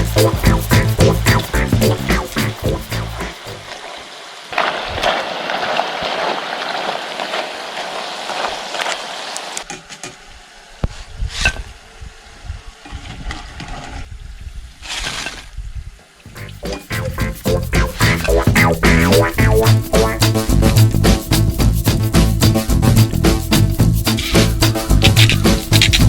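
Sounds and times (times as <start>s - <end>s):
potato sticks sizzling in oil: 0.0s - 4.4s.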